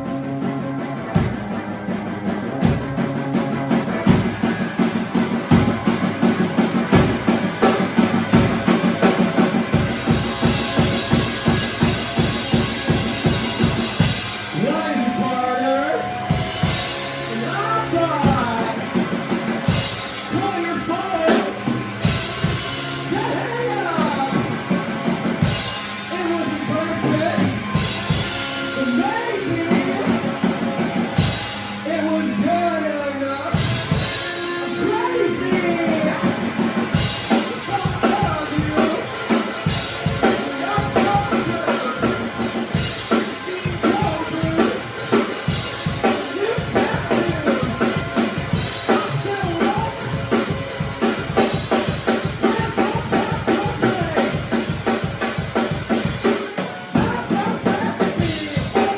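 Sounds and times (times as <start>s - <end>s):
drum kit: 0.0s - 58.9s
live band playing: 0.0s - 58.9s
person singing: 14.5s - 18.9s, 28.5s - 30.5s, 31.8s - 54.6s, 56.3s - 58.9s.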